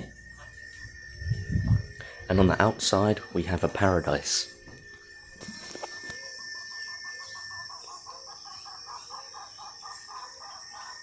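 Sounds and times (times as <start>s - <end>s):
high insect drone: 0.0s - 11.0s
repeated animal calls: 6.1s - 11.0s.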